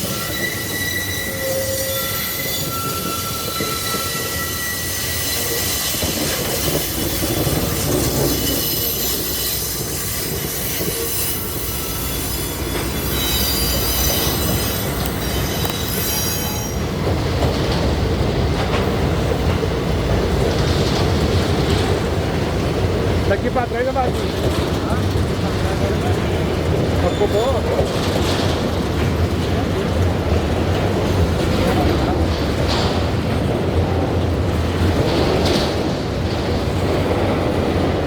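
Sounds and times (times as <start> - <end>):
train wheels squealing: 0.0 - 17.1, 25.8 - 29.4
freight train rumble and clatter: 0.0 - 38.0.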